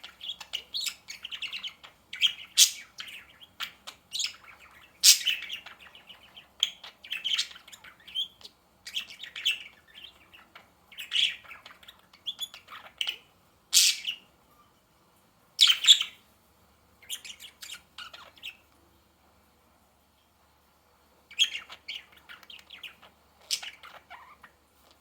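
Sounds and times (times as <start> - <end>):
budgerigars chirping: 0.0 - 14.3, 15.6 - 16.2, 17.0 - 18.6, 21.3 - 24.6.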